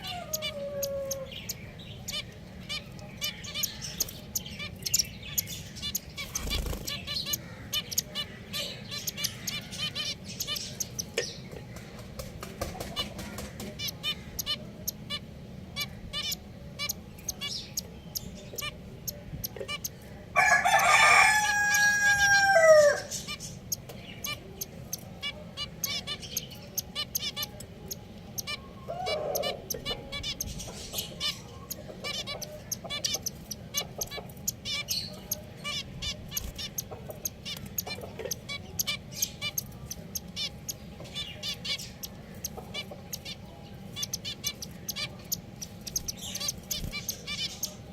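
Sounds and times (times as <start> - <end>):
finches chirping: 0.0 - 12.1, 12.8 - 47.9
rooster crowing: 20.4 - 23.1.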